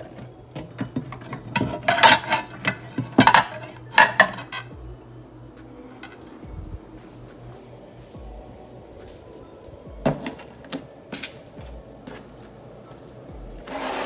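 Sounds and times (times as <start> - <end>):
plates clinking and clattering: 0.0 - 4.8.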